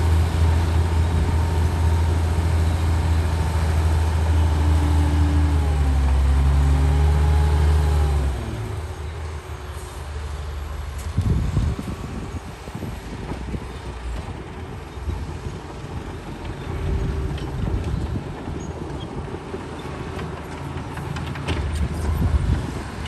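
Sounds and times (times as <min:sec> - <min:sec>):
diesel machinery low rumble: 0:00.0 - 0:23.0
rattling and clanking: 0:14.2 - 0:23.0.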